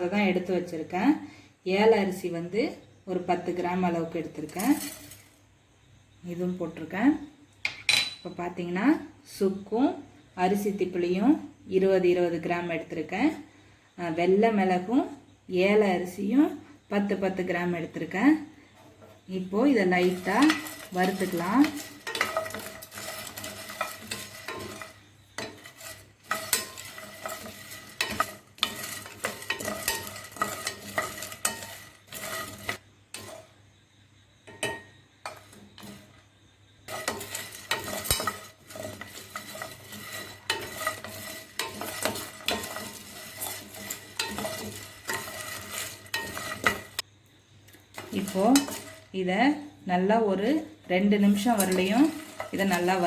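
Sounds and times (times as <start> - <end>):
spatula scraping spices in a pan: 0.0 - 8.2, 9.0 - 53.0.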